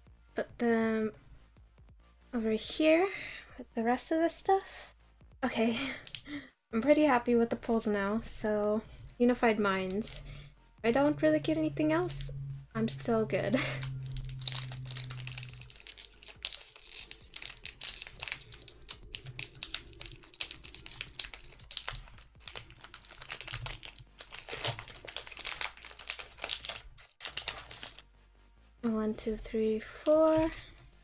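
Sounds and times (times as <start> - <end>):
foil wrapper crinkling and tearing: 13.0 - 28.0, 29.6 - 31.0.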